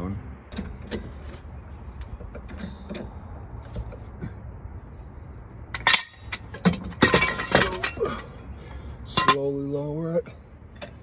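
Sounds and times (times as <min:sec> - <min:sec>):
sharp metallic clanks ringing: 0:05.7 - 0:08.0.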